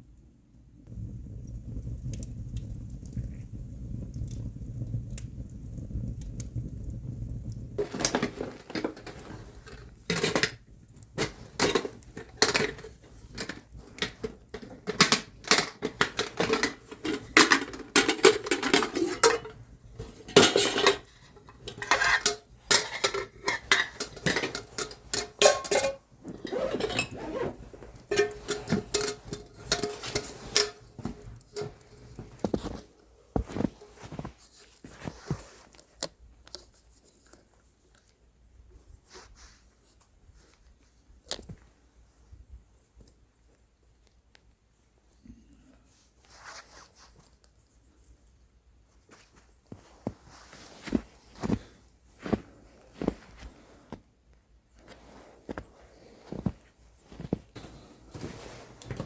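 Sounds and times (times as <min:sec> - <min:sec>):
metal cookware clanking: 0:07.8 - 0:10.6, 0:11.2 - 0:32.8.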